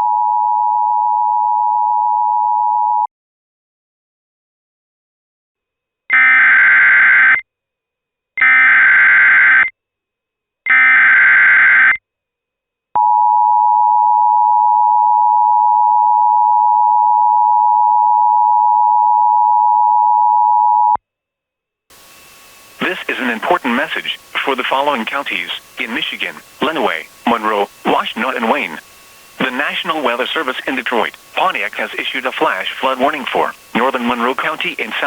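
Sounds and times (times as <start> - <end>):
data bursts: 21.9 - 35.0.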